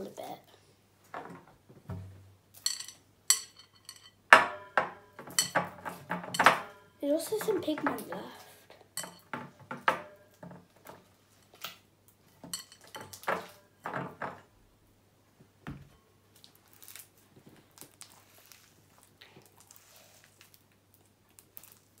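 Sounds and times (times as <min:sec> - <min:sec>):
sharp knocks: 0:04.3 - 0:06.8.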